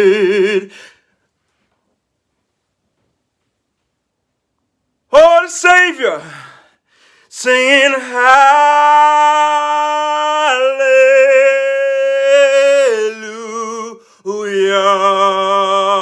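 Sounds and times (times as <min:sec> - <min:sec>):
person singing gospel unaccompanied: 0:00.0 - 0:01.1, 0:05.1 - 0:06.6, 0:07.2 - 0:16.0
singer breath: 0:00.6 - 0:01.2, 0:06.2 - 0:07.3.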